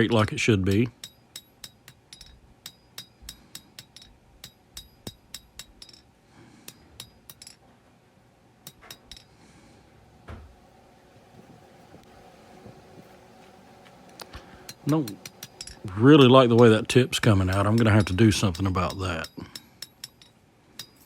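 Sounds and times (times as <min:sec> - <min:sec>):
hammer striking blade on anvil: 0:00.7 - 0:07.6, 0:08.6 - 0:09.3, 0:14.7 - 0:21.0.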